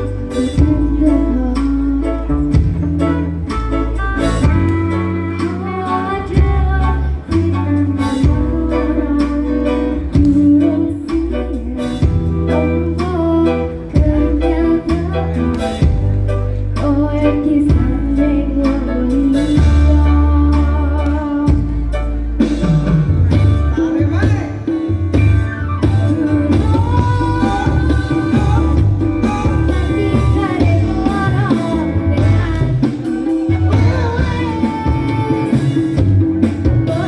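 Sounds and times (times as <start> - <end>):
person singing: 0.0 - 22.9, 25.8 - 37.0
song with guitar and bass: 0.0 - 37.0.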